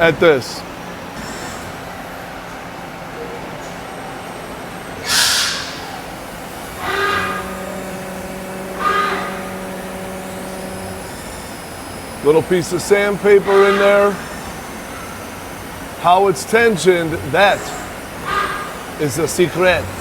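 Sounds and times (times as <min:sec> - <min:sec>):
lathe spindle hum: 0:00.0 - 0:20.0
polishing tool squeals: 0:05.0 - 0:20.0.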